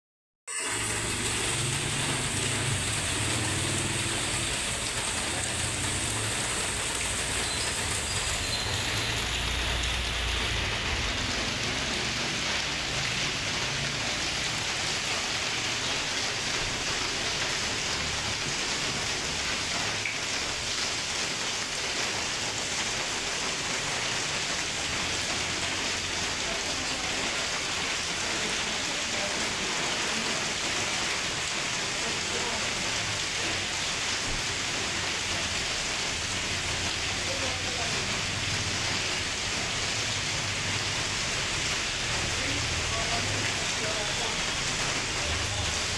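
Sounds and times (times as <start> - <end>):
heavy rain on hard surfaces: 0.5 - 45.9.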